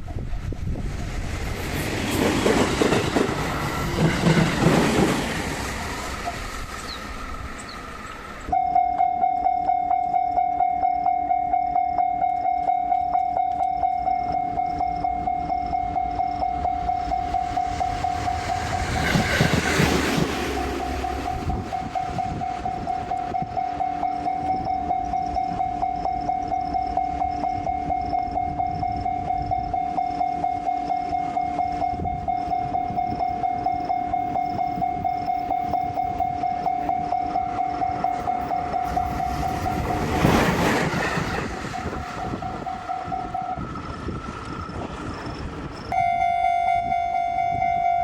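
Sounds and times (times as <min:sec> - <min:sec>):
passing train: 0:00.0 - 0:48.0
level-crossing warning bell: 0:08.5 - 0:48.0
low rumble: 0:16.1 - 0:23.6.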